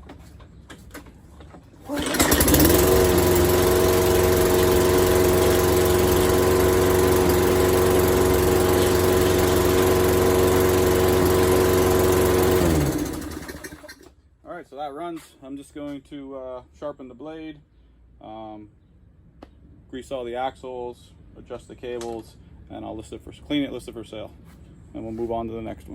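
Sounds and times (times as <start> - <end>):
lawn mower engine running: 1.8 - 14.1.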